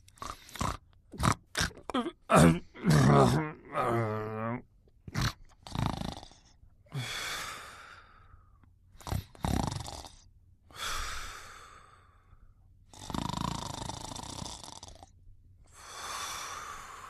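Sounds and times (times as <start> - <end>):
person snoring softly: 5.2 - 8.4, 9.0 - 17.0.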